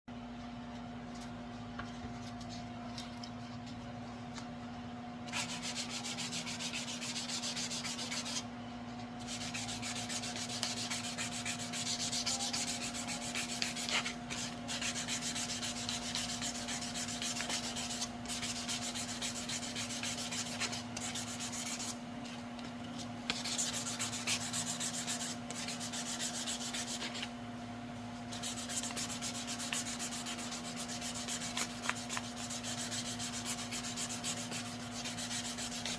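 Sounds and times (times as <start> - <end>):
steady low hum: 0.1 - 35.9
sanding paintwork: 5.3 - 8.4, 9.2 - 22.4, 23.3 - 27.3, 28.3 - 35.9.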